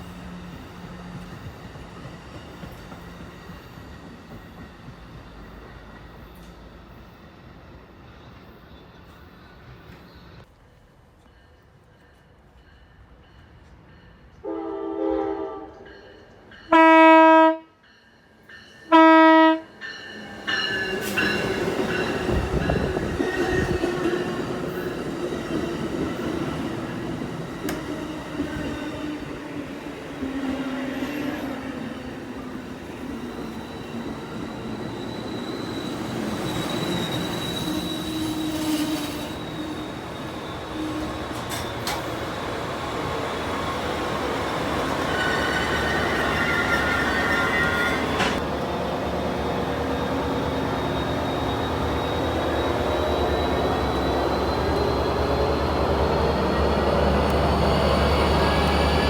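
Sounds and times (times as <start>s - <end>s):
train wheels squealing: 0.0s - 10.5s, 19.7s - 59.0s
train rumbling past: 0.0s - 59.0s
truck air horn blasts: 14.5s - 15.7s, 16.7s - 17.7s, 18.9s - 19.7s
multi-note horn: 16.7s - 17.7s, 18.9s - 19.7s.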